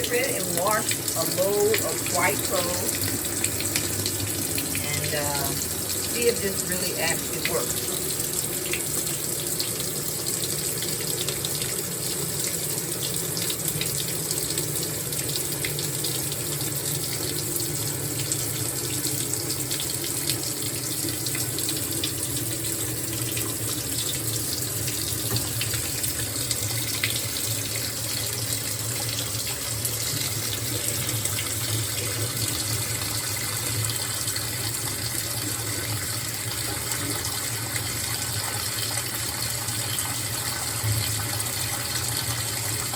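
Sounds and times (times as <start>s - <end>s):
water running into washing machine: 0.0s - 42.9s.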